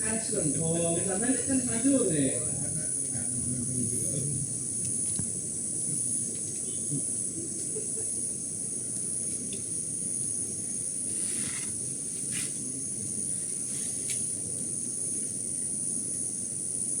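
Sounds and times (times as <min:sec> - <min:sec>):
low outdoor rumble: 0:00.0 - 0:09.0
insect chorus drone: 0:00.0 - 0:17.0.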